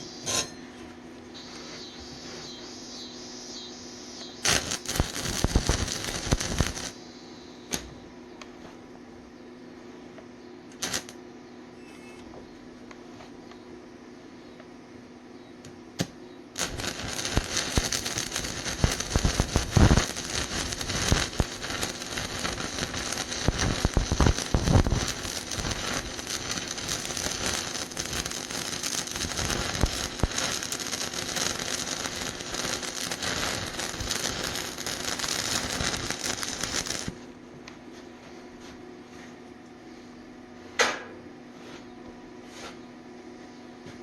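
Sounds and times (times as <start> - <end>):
welding arc crackling: 3.0 - 7.0, 10.7 - 11.2, 16.0 - 37.3
welding rod ticks: 4.4 - 6.9, 16.0 - 37.2.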